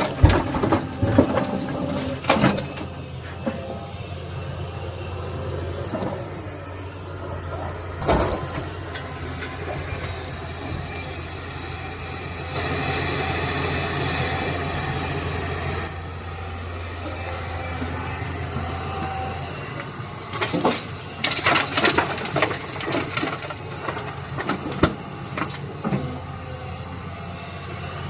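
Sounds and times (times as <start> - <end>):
excavator diesel engine running: 0.0 - 28.0
loud clunk: 8.0 - 9.1.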